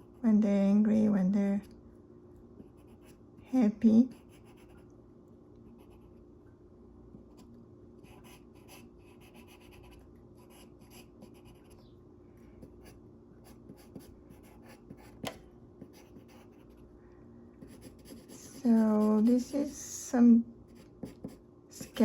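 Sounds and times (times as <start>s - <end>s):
faint steady hum: 0.0s - 22.0s
pencil sketching on paper: 8.1s - 11.7s, 12.8s - 15.2s, 15.8s - 16.8s, 17.6s - 19.8s, 20.7s - 22.0s.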